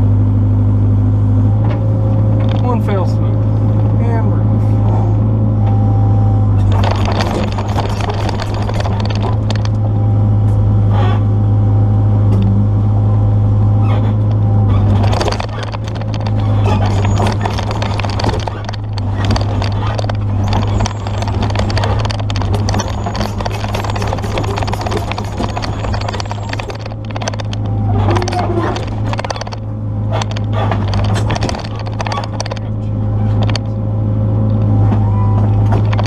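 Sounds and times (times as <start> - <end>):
excavator diesel engine running: 0.0 - 36.0
bucket knocking and scraping: 15.0 - 27.4.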